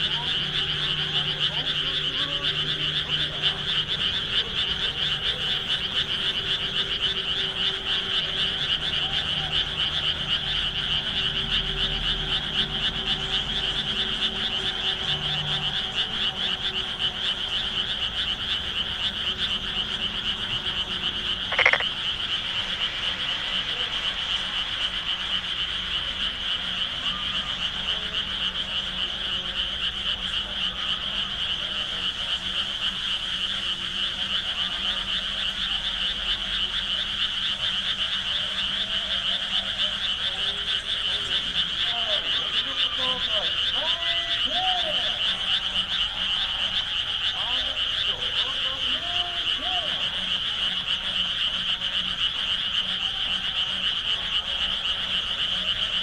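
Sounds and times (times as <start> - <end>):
frogs croaking chorus: 0.0 - 56.0
faint rising and falling calls: 15.5 - 22.5.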